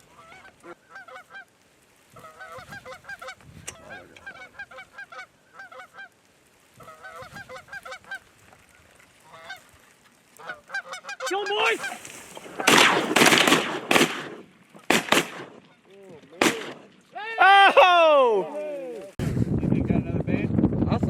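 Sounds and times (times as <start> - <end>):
goose honking: 0.0 - 1.5, 2.1 - 6.1, 6.8 - 8.3, 9.2 - 9.7, 10.4 - 13.0.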